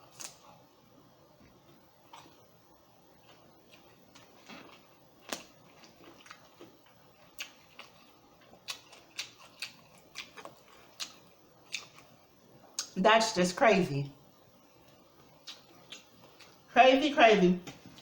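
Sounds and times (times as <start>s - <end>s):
chewing clicks and smacks: 3.3s - 12.1s, 15.3s - 16.6s.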